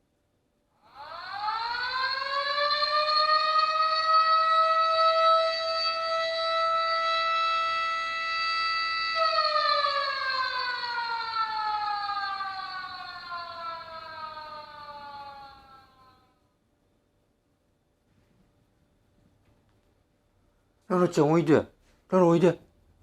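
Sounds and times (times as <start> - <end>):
motor-driven stadium siren: 0.8 - 16.4.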